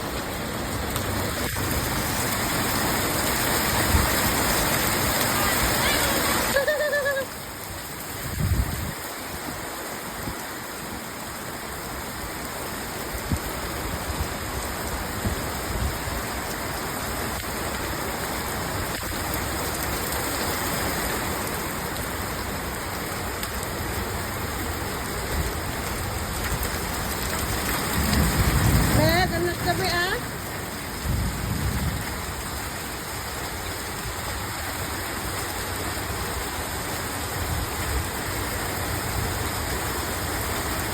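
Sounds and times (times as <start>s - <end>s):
steady rain hiss: 0.0s - 40.9s
faint hail ticks: 23.2s - 29.8s.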